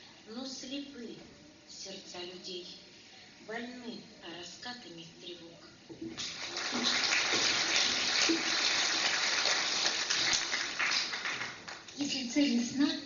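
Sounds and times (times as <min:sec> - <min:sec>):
audience applauding: 0:06.2 - 0:11.9.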